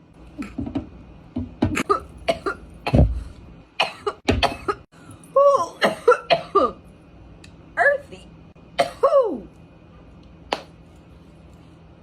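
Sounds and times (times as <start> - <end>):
woman coughing: 1.8 - 3.2, 3.8 - 4.9, 5.7 - 6.8, 8.8 - 9.3.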